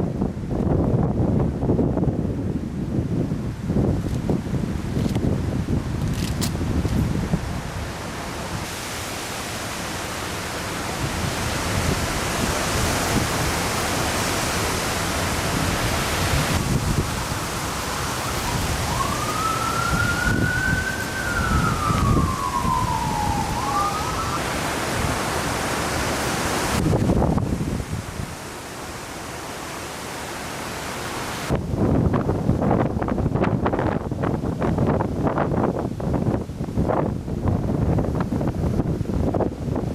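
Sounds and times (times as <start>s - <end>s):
strong wind on microphone: 0.0s - 28.4s, 31.3s - 39.9s
siren wailing: 17.6s - 25.3s.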